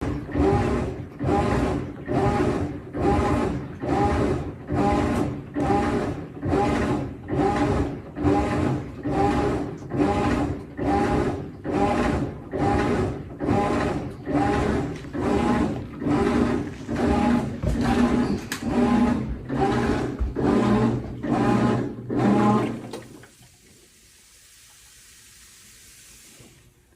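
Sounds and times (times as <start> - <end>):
washing machine agitator humming: 0.0 - 26.9.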